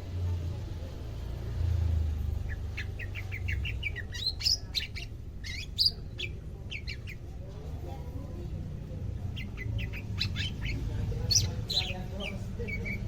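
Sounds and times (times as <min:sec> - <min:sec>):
bird chirping rapidly: 0:02.2 - 0:07.4, 0:09.2 - 0:13.0.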